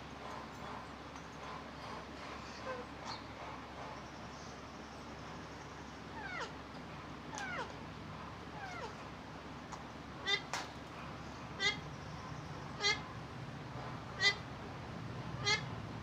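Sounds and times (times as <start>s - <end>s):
parrot falling cries: 6.2s - 6.5s, 7.3s - 7.8s, 8.6s - 9.0s
parrot harsh squawks: 6.2s - 6.5s, 8.6s - 9.0s, 10.2s - 10.5s, 11.6s - 11.8s, 12.8s - 13.0s, 14.2s - 14.4s, 15.4s - 15.7s.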